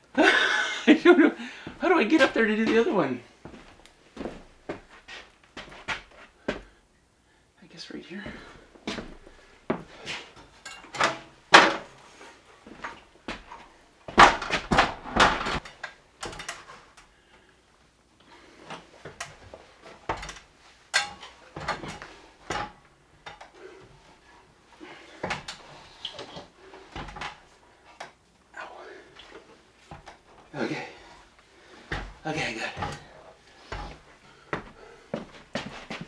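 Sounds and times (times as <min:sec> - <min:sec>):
knocks and clunks on stair pulley: 0:12.7 - 0:17.0, 0:18.7 - 0:23.6.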